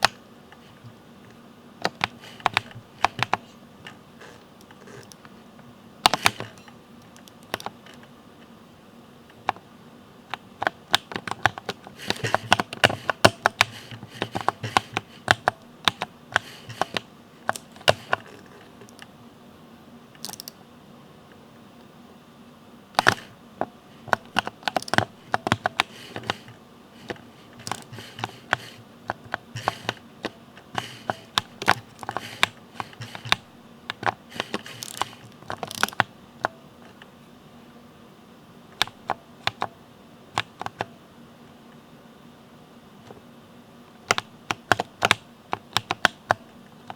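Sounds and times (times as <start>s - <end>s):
mechanical keyboard typing: 0.0s - 1.0s, 1.8s - 5.3s, 6.0s - 8.0s, 10.3s - 19.1s, 20.2s - 20.6s, 23.0s - 37.0s, 38.8s - 39.8s, 40.4s - 40.9s, 44.0s - 46.9s.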